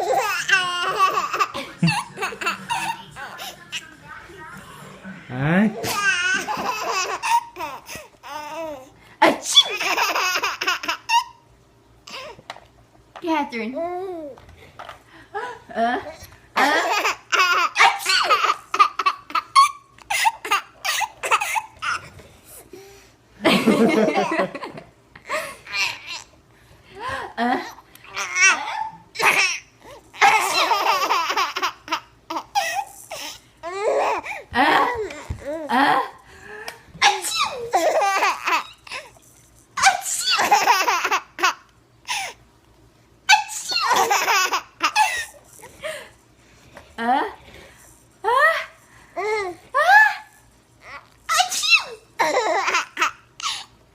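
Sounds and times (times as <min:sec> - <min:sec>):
baby laughing: 0:00.0 - 0:03.8, 0:05.8 - 0:11.4, 0:16.6 - 0:22.1, 0:25.3 - 0:26.3, 0:27.7 - 0:35.7, 0:37.0 - 0:39.2, 0:39.8 - 0:42.3, 0:43.3 - 0:45.7, 0:50.8 - 0:53.7.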